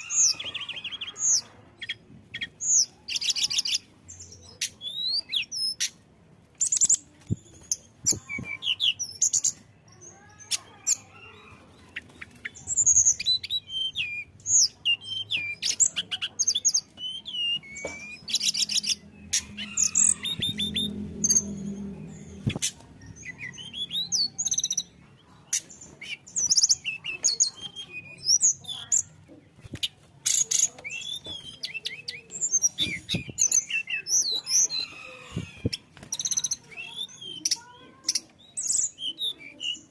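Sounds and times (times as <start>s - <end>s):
bird singing fast varied song: 0.0s - 6.0s, 6.6s - 29.2s, 29.8s - 39.9s.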